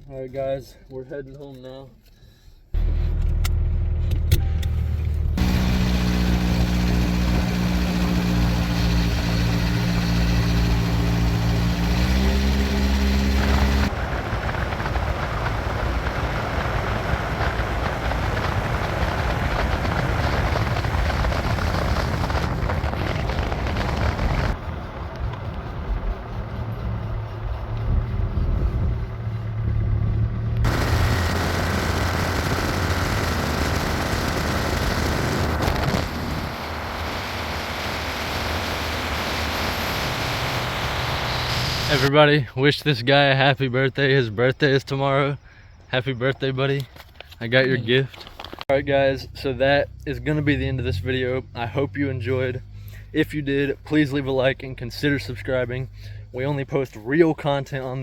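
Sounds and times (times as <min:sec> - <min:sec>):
truck engine running: 0:02.8 - 0:42.1
truck driving: 0:02.8 - 0:42.3, 0:47.5 - 0:58.0.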